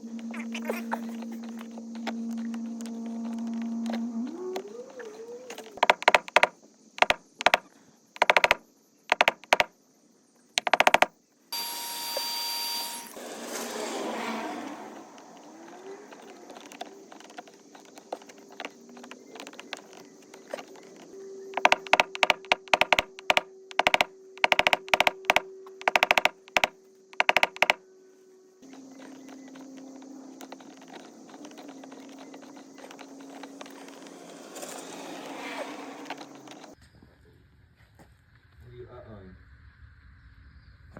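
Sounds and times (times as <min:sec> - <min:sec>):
tool tapping metal panel: 0:21.6 - 0:27.8.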